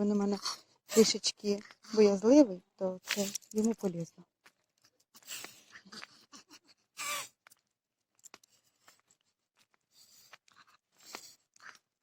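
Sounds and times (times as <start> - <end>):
crunching footsteps: 3.0 - 11.9.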